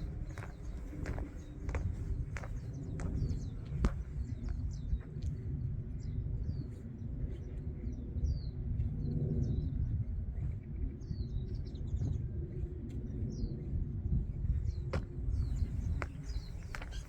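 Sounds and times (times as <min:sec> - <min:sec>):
small birds chirping: 0:00.0 - 0:05.3, 0:14.4 - 0:17.0
steady low rumble: 0:00.0 - 0:17.0.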